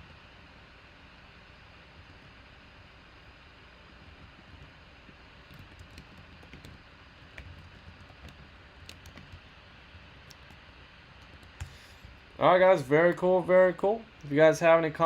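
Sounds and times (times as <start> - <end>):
low steady hiss: 0.0 - 15.0
computer keys tapping: 4.0 - 12.2.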